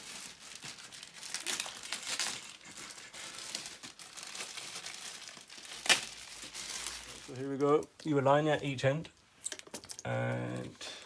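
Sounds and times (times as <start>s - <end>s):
packaging crinkling: 0.0s - 8.1s.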